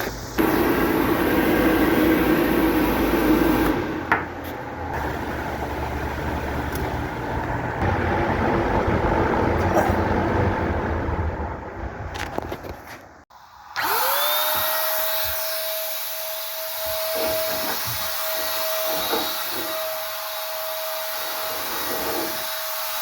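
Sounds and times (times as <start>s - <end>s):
machine whirring hum: 0.2s - 12.1s.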